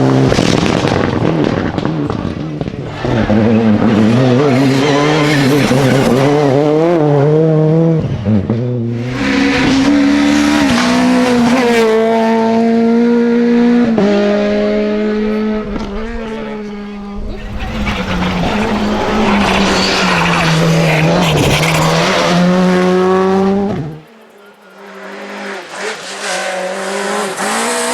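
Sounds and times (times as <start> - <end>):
rally car engine revving: 0.0 - 27.9.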